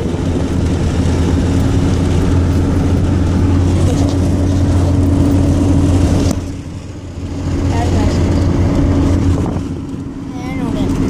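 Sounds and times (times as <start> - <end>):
vehicle engine droning: 0.0 - 11.0.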